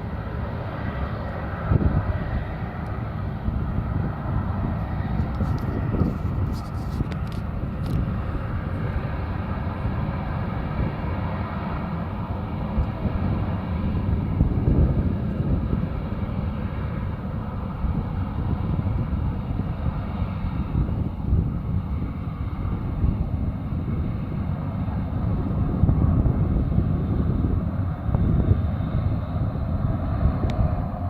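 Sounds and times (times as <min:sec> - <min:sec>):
jet engines rumbling: 0:00.0 - 0:31.0.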